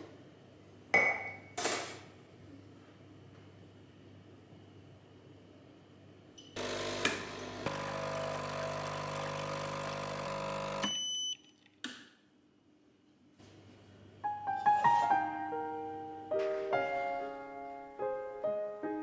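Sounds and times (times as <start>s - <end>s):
appliance motor humming: 6.6s - 10.9s
appliance clicks: 6.8s - 7.8s.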